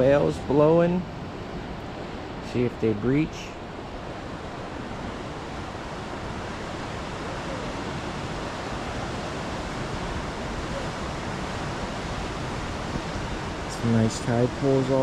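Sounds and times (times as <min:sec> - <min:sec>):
ocean surf: 0:00.0 - 0:15.0
wind: 0:00.0 - 0:15.0.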